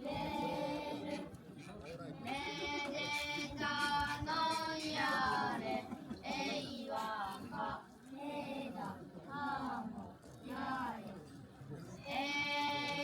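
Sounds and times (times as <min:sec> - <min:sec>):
voices singing unaccompanied: 0:00.0 - 0:01.3, 0:02.2 - 0:11.1, 0:12.0 - 0:13.0.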